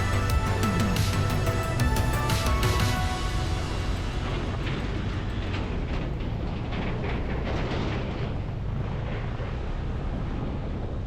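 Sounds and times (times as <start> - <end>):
motorcycle engine rumble: 0.0 - 11.0
wind buffeting microphone: 4.0 - 11.0.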